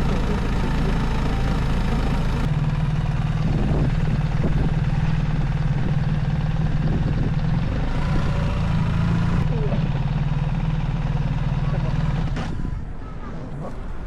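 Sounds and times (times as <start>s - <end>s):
motor humming: 0.0s - 5.2s.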